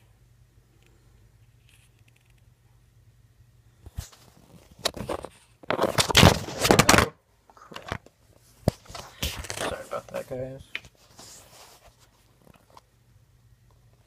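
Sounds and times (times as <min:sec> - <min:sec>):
handling noise on microphone: 0:03.8 - 0:07.1, 0:07.7 - 0:12.9.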